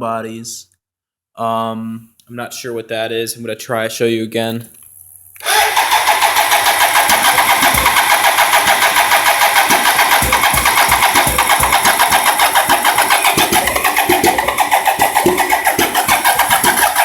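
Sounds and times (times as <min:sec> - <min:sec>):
engine cranking on starter: 0:05.4 - 0:17.0.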